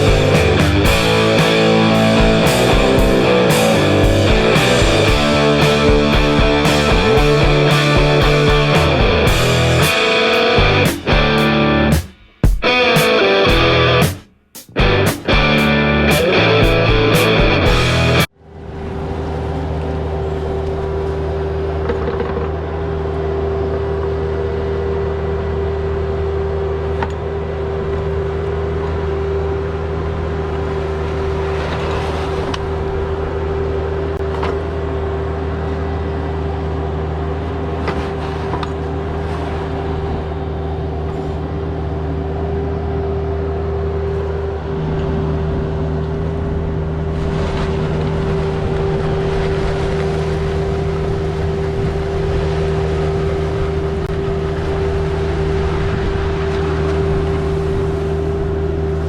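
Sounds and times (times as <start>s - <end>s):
steady hum: 0.0s - 21.7s
excavator engine drone: 0.0s - 59.0s.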